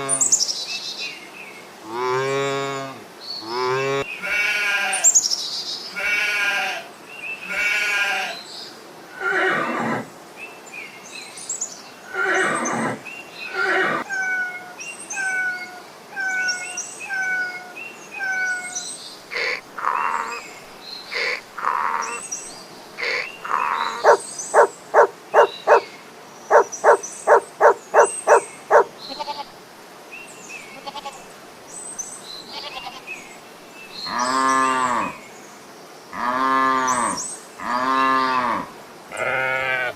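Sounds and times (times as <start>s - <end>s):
livestock bleating: 1.9s - 5.0s, 5.9s - 8.4s, 27.3s - 29.5s, 30.8s - 31.2s, 32.5s - 33.1s, 36.2s - 39.9s
falling livestock cries: 6.0s - 6.8s, 7.5s - 8.4s, 23.5s - 25.8s, 26.5s - 29.5s, 36.2s - 39.9s
fast pulsing animal calls: 23.0s - 25.8s, 26.5s - 28.9s.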